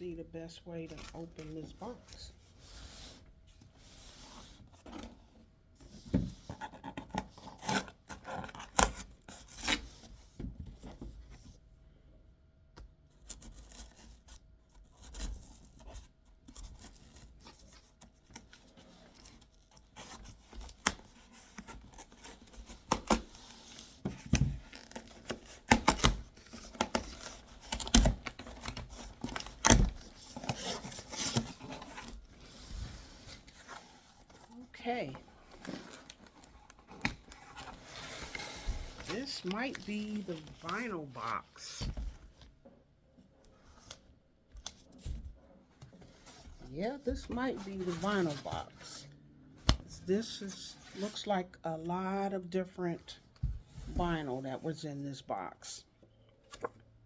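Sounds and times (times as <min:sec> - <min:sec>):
cardboard box being unpacked: 0:13.3 - 0:42.4, 0:46.0 - 0:49.0.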